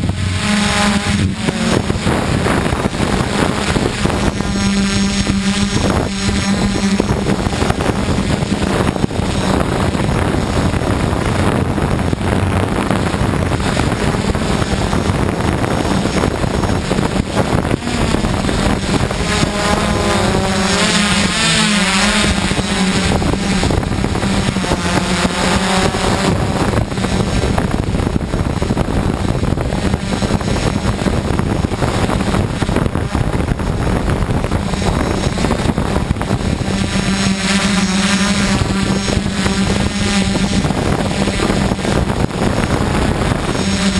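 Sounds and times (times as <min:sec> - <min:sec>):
drone motors humming: 0:00.0 - 0:43.9
wind noise: 0:00.0 - 0:43.9.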